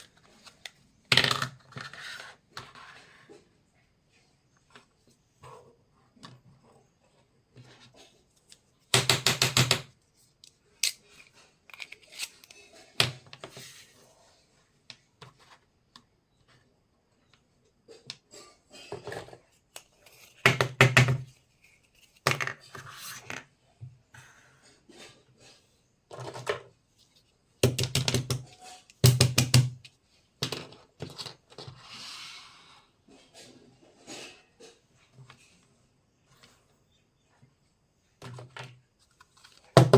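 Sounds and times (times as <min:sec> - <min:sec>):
toy kitchenware clicking and knocking: 0:08.9 - 0:09.9, 0:18.0 - 0:21.4, 0:27.6 - 0:31.5
toy kitchen pieces tapping and clicking: 0:08.9 - 0:13.5, 0:27.6 - 0:31.6.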